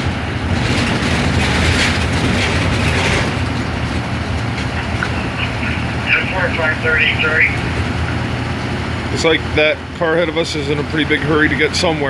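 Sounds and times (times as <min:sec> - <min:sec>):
bus engine rumble: 0:00.0 - 0:12.0
tyres and wind hissing: 0:01.3 - 0:09.2.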